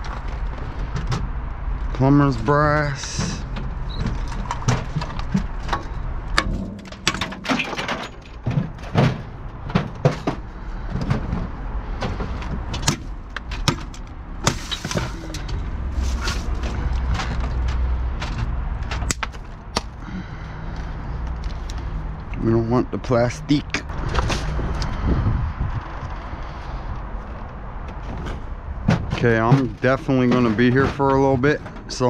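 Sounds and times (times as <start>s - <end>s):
low steady rumble: 0.0s - 32.0s
scrap metal clanking in dumpster: 3.0s - 19.1s, 28.0s - 32.0s.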